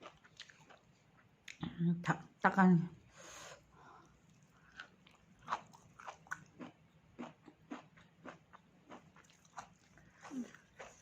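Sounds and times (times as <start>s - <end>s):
person chewing: 0.0s - 1.6s, 4.0s - 11.0s.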